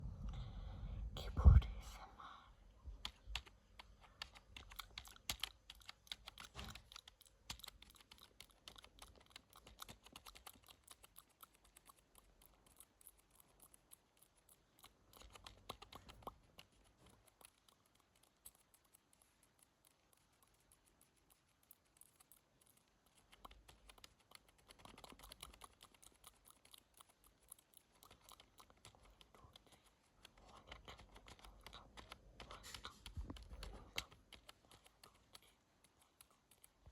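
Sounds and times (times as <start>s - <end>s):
mechanical keyboard keystroke clicks: 3.0s - 11.0s.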